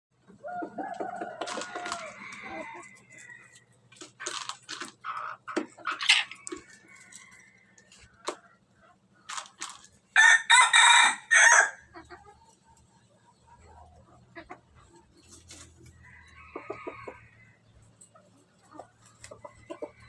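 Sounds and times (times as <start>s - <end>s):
chicken clucking: 0.2s - 20.0s
rooster crowing: 0.4s - 3.6s, 10.2s - 11.9s, 16.0s - 17.6s.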